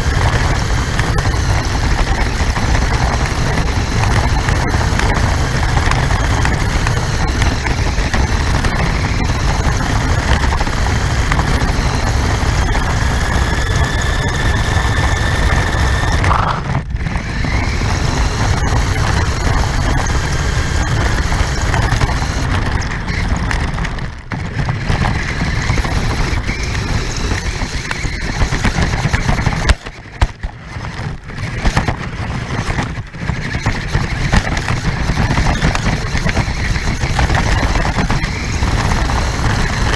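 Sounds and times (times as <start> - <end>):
thin motor whine: 0.0 - 23.6
rc car chassis rattling: 0.0 - 39.9.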